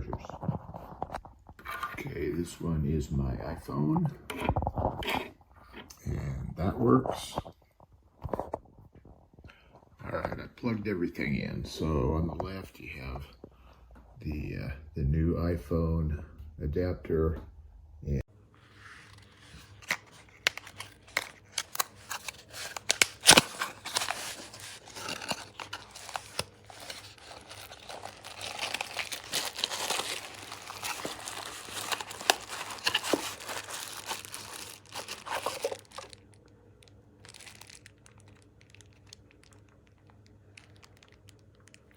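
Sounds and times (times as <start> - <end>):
crinkling and rustling: 18.5 - 41.9.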